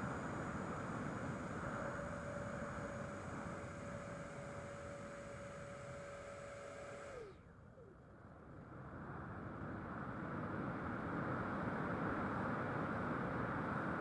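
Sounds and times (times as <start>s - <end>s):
model plane motor whine: 0.1s - 7.4s.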